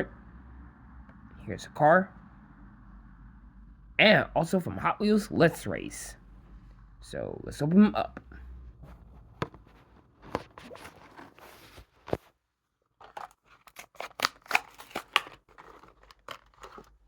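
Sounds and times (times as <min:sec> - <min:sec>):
plastic and cardboard crackling: 0:08.8 - 0:12.4, 0:13.0 - 0:17.0.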